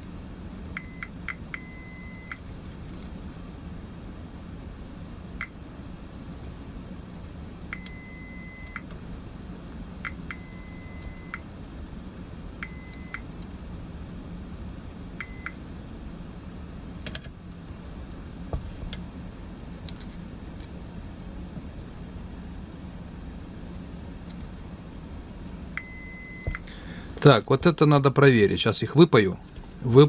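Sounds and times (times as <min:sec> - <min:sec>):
multimeter continuity beep: 0:00.7 - 0:02.4, 0:07.7 - 0:08.9, 0:10.0 - 0:11.5, 0:12.6 - 0:13.3, 0:15.2 - 0:15.6, 0:25.8 - 0:26.6.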